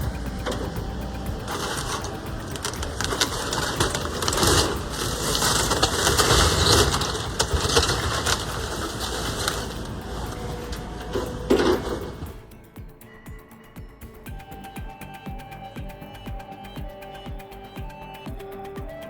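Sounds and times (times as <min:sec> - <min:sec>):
debris crunching and crashing: 0:00.0 - 0:12.5
excavator demolishing house: 0:00.0 - 0:12.5.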